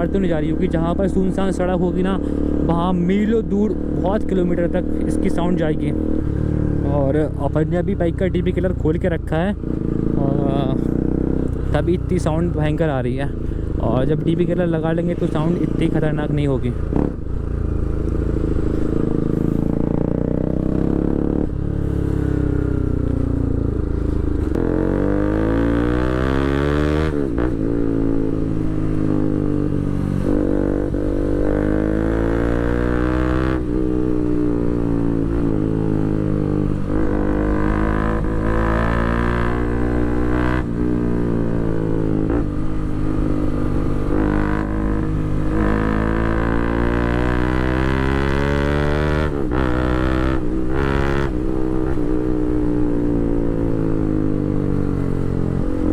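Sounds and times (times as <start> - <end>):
loud motorcycle engine accelerating: 16.9 - 55.9.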